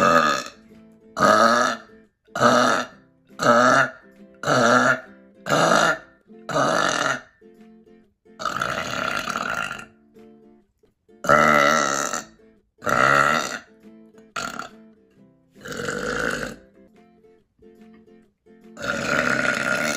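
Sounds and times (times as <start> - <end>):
person burping loudly: 0.0 - 0.6, 1.2 - 7.4, 8.4 - 10.0, 11.2 - 14.8, 15.6 - 16.7, 18.8 - 19.9.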